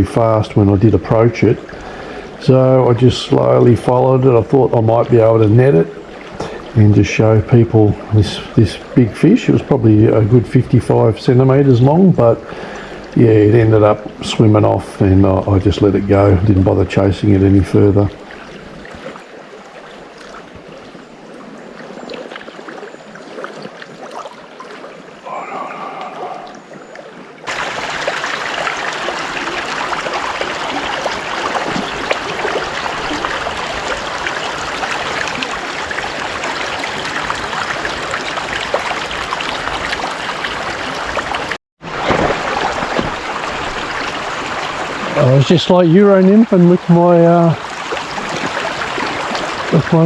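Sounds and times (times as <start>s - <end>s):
river water rushing: 18.1s - 50.0s.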